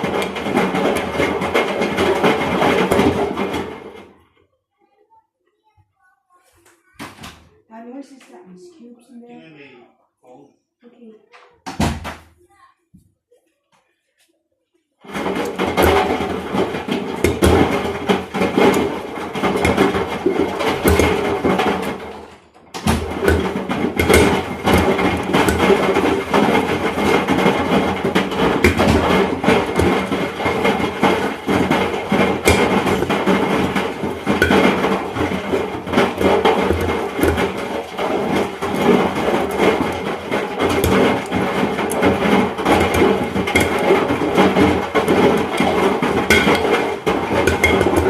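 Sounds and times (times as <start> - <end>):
ice banging in metal drum: 0.0 - 4.2, 15.0 - 48.0
washing machine rumble: 0.0 - 4.2, 15.0 - 48.0.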